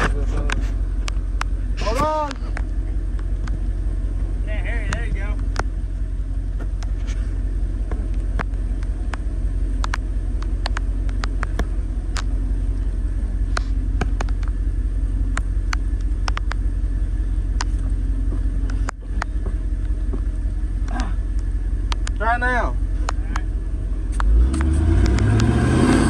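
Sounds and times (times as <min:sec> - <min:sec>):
sharp clicks and knocks: 0:00.0 - 0:03.7, 0:04.8 - 0:05.8, 0:06.5 - 0:12.5, 0:13.5 - 0:14.6, 0:15.3 - 0:16.7, 0:17.5 - 0:22.3, 0:23.0 - 0:23.5, 0:24.1 - 0:25.6
truck engine running under load: 0:00.0 - 0:26.0.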